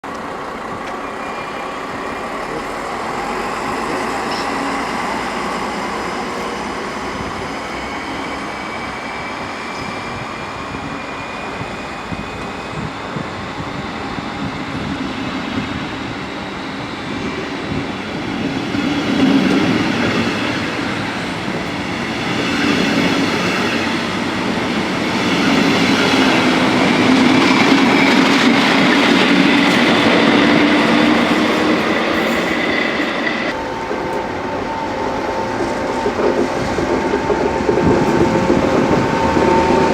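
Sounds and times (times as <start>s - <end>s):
train rumbling on track: 0.0s - 39.9s
high squeal: 1.0s - 17.8s, 25.3s - 39.9s.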